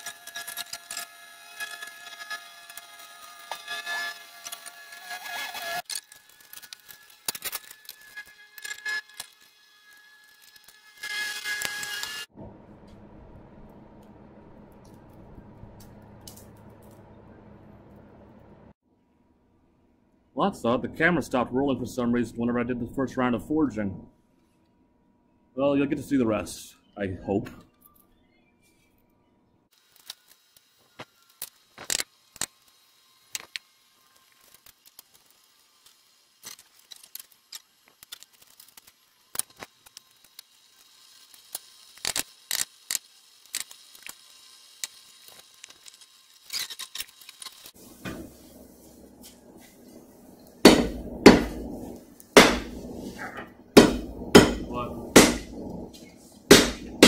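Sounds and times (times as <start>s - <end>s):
low steady rumble: 12.4s - 18.8s, 47.8s - 57.0s
hammer blows on anvil: 50.7s - 51.8s, 52.4s - 55.6s, 56.5s - 57.0s.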